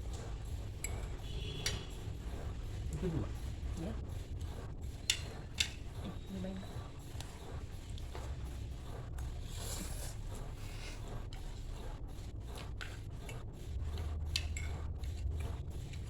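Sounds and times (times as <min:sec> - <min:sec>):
cutlery scraping a dish: 0:00.8 - 0:02.0, 0:04.9 - 0:06.2, 0:12.6 - 0:16.0.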